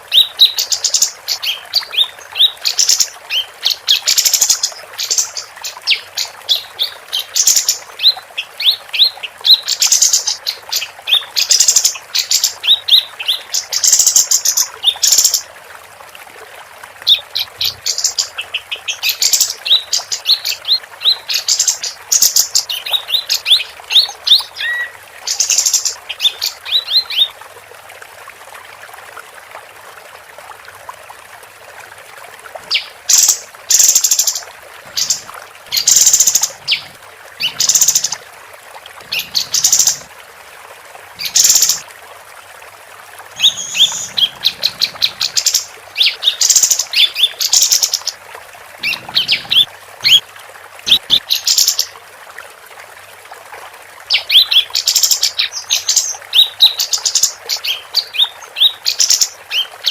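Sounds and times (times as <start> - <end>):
songbird chirping and trilling: 17.1 - 27.3, 43.4 - 48.2, 48.8 - 50.2.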